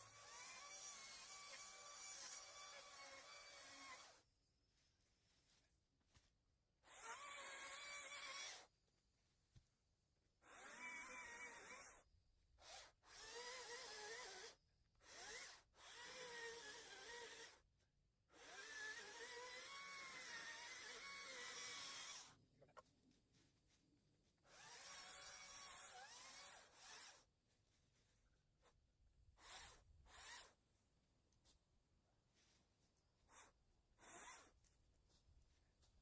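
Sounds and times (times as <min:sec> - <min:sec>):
electric chainsaw cutting wood: 0:00.0 - 0:04.2, 0:06.9 - 0:08.7, 0:10.4 - 0:12.0, 0:12.6 - 0:17.6, 0:18.3 - 0:22.4, 0:24.5 - 0:27.3, 0:29.4 - 0:30.6, 0:34.0 - 0:34.6.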